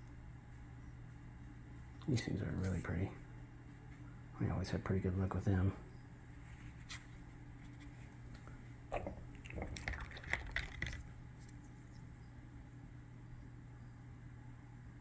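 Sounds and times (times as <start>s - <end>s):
steady low hum: 0.0s - 15.0s
stone pieces knocking and rustling: 9.6s - 11.1s.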